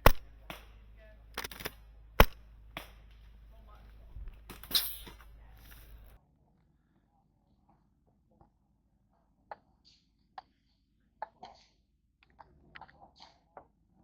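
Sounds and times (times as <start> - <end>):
airsoft gun shots: 0.0 - 3.3.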